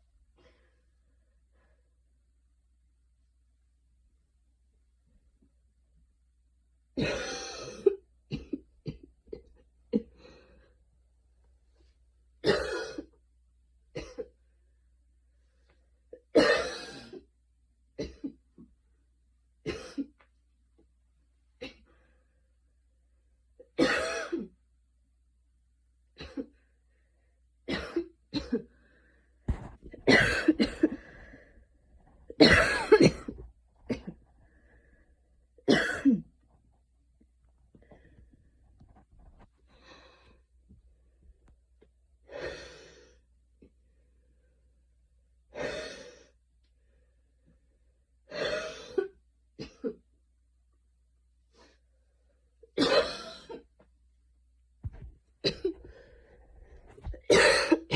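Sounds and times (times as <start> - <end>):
woman coughing: 7.0 - 9.1, 12.4 - 13.1, 16.4 - 17.2, 23.8 - 24.5, 30.1 - 31.0, 32.4 - 34.2, 35.7 - 36.3, 52.8 - 53.6, 55.4 - 55.8, 57.2 - 57.9.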